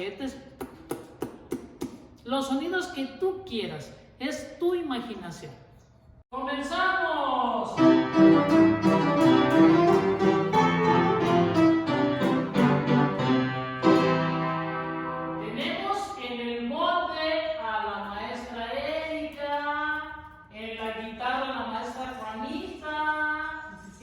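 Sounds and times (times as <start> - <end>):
piano playing chords: 7.8 - 16.1.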